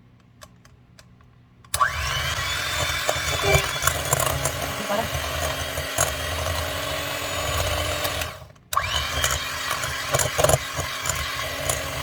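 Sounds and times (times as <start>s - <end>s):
electric hand mixer running: 1.8s - 12.0s.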